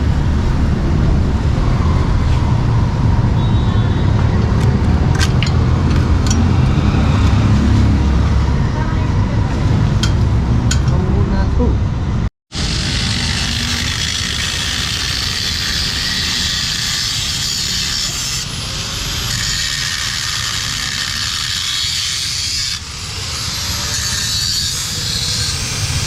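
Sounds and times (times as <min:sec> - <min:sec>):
low rumble: 0:00.0 - 0:12.3.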